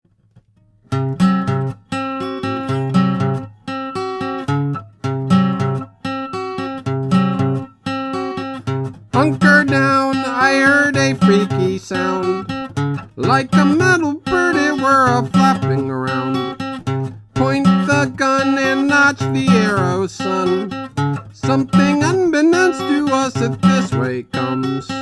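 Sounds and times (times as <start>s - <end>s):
acoustic guitar playing: 0.1s - 25.0s
man singing: 9.2s - 12.6s, 13.2s - 16.7s, 17.4s - 25.0s.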